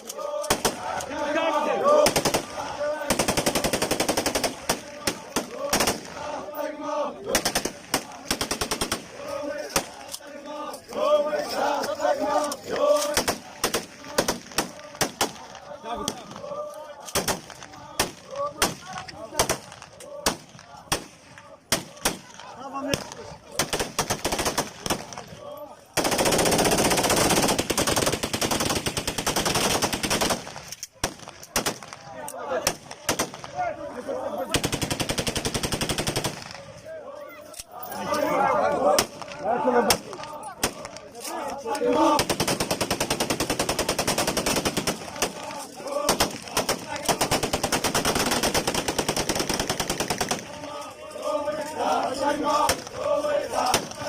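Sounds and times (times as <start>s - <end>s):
man shouting chanting: 0.1s - 3.8s, 4.5s - 7.5s, 36.7s - 42.3s
automatic gunfire: 1.9s - 6.3s, 7.3s - 9.1s, 13.0s - 15.5s, 21.7s - 25.2s, 26.0s - 32.0s, 34.5s - 36.6s, 42.0s - 50.6s.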